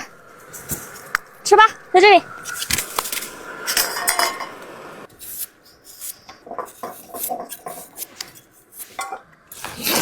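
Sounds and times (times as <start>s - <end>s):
dishes and utensils clinking: 3.7s - 4.6s.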